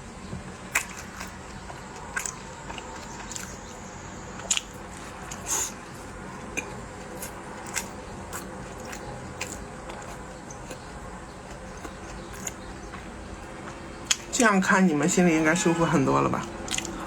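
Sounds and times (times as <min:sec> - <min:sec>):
person chewing bread: 0:00.0 - 0:15.0, 0:16.4 - 0:17.0
moist mouth clicks and smacks: 0:04.4 - 0:14.4, 0:16.6 - 0:17.0.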